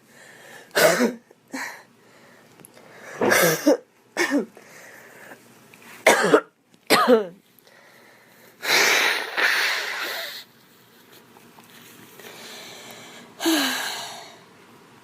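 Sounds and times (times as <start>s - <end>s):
girl coughing: 0.8s - 1.7s, 3.2s - 4.5s, 6.0s - 7.4s.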